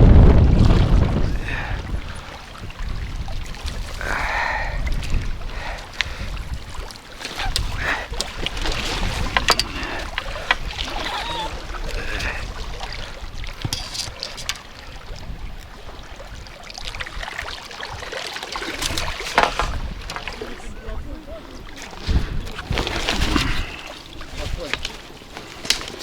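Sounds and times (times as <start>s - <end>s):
water splashing and lapping: 0.0s - 26.0s
wind buffeting microphone: 0.0s - 26.0s
fishing tackle clicking: 13.6s - 14.7s.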